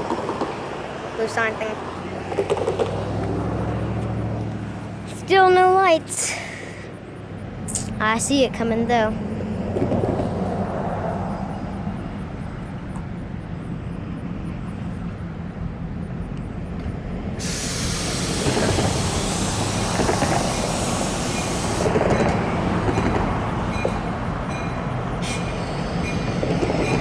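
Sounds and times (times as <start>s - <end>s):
train rumble: 0.0s - 27.0s
loud hiss: 17.4s - 22.1s.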